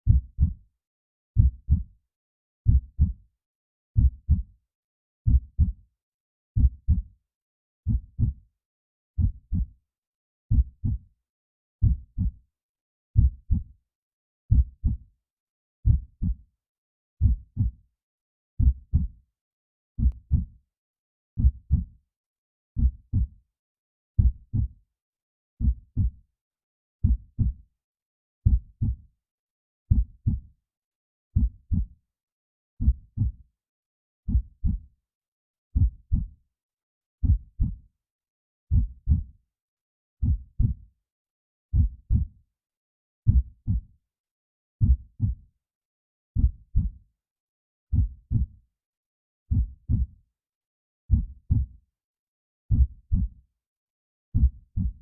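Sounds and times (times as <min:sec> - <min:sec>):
heartbeat thumps: 0:01.4 - 0:01.8, 0:41.8 - 0:42.2, 0:44.8 - 0:45.3.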